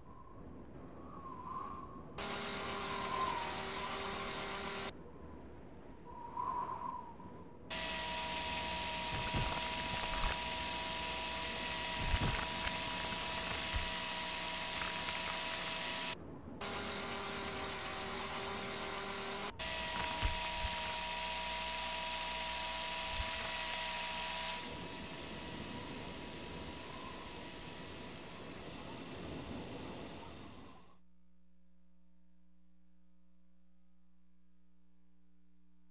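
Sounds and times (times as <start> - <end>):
lower-pitched whir: 1.1 - 5.0, 6.1 - 31.0
mechanism whirring with hiss: 2.2 - 4.9, 7.7 - 31.0.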